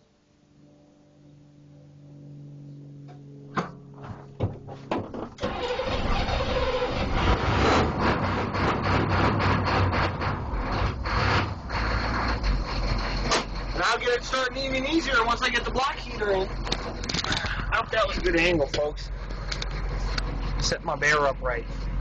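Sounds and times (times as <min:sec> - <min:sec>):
diesel engine running rough: 0:00.6 - 0:22.0
engine cranking: 0:05.3 - 0:20.8.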